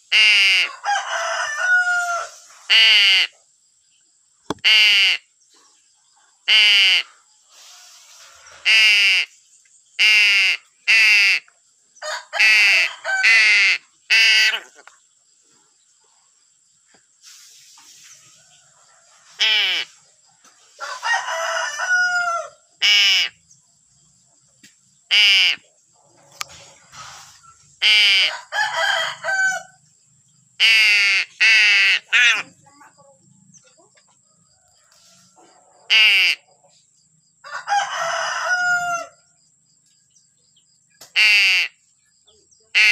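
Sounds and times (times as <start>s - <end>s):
crow cawing: 4.5s - 5.2s.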